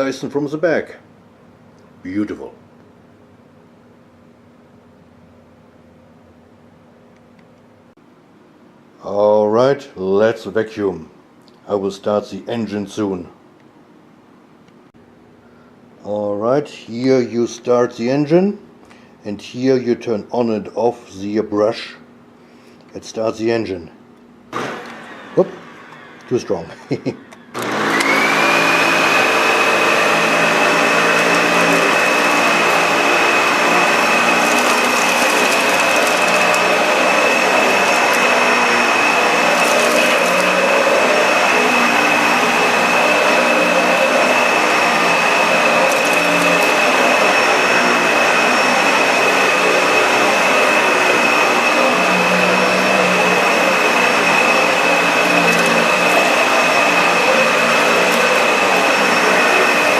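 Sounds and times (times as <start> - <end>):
vacuum cleaner running: 0.0 - 0.6, 24.5 - 59.9.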